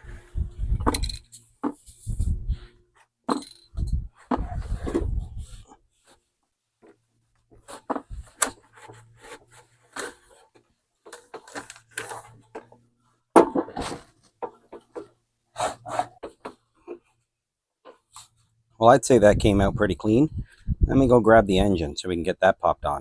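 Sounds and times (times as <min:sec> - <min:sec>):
handling noises: 0:00.0 - 0:17.2.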